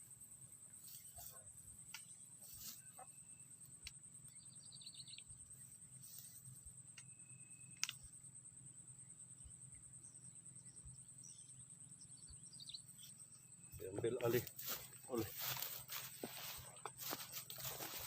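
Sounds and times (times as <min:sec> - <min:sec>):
rapid bird chirping: 0:00.8 - 0:16.7
faint small clicks: 0:06.9 - 0:07.1, 0:07.8 - 0:08.0.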